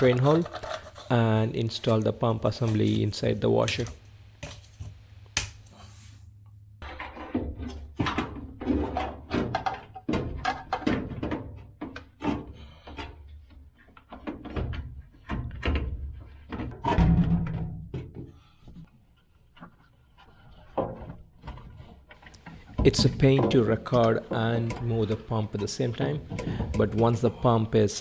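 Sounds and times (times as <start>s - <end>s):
knocks and scraping of pump parts: 0.0s - 18.9s, 19.5s - 27.6s.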